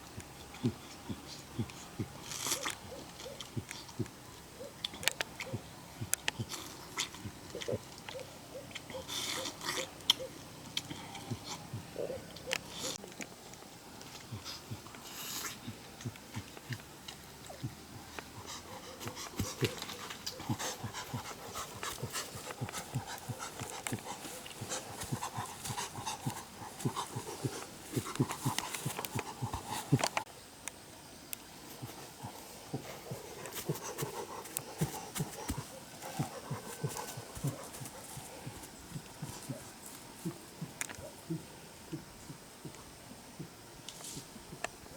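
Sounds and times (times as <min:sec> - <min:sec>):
dog panting: 0:17.6 - 0:30.2, 0:31.8 - 0:40.4.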